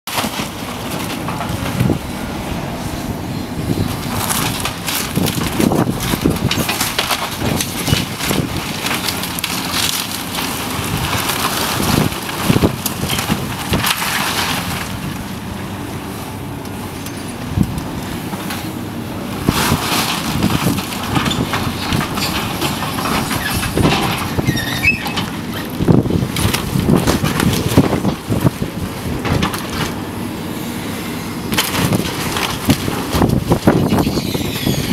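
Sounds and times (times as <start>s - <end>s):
debris crunching and cracking: 0.1s - 2.2s, 3.6s - 15.9s, 16.9s - 30.2s, 31.4s - 34.9s.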